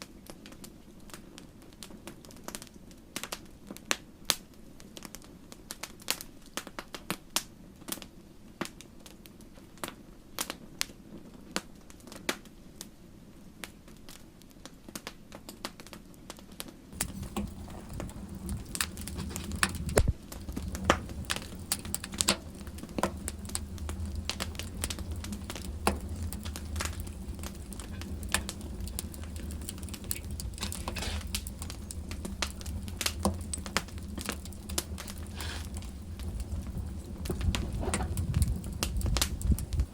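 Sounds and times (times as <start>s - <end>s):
wood fire crackling: 0.0s - 39.9s
steady low rumble: 17.0s - 39.9s.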